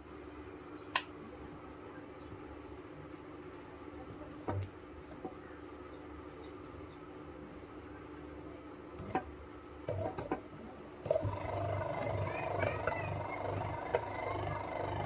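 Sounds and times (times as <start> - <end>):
electric motor humming: 11.1 - 15.0.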